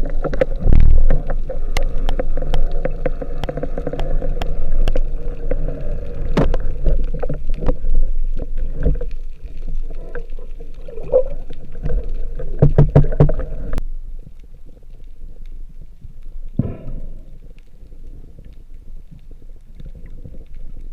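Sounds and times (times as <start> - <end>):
sharp knocks: 16.6 - 17.2.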